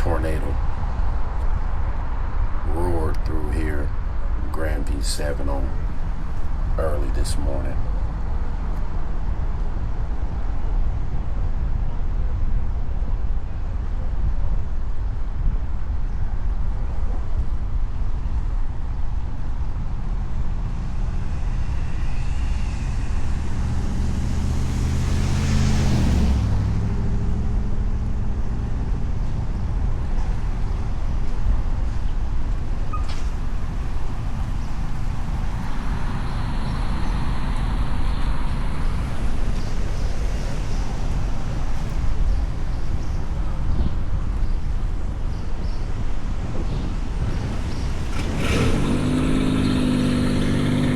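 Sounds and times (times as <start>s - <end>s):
vehicle engine and road noise: 0.0s - 50.9s
vehicle passing by: 20.5s - 30.0s, 46.8s - 50.9s.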